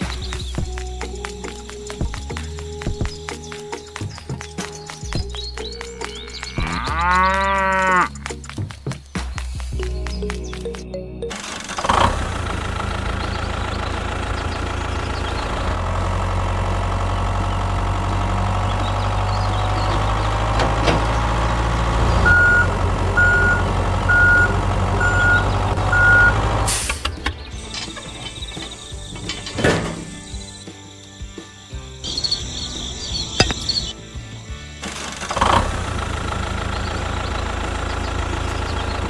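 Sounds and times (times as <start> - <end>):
vehicle engine running: 0.0 - 29.6, 31.8 - 39.0
reversing alarm beeping: 22.2 - 26.4.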